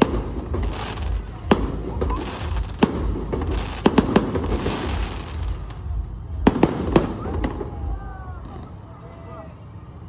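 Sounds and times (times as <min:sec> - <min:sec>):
fireworks bangs: 0:00.0 - 0:08.9
fireworks crackling: 0:00.0 - 0:08.9
constant low rumble: 0:00.0 - 0:10.0.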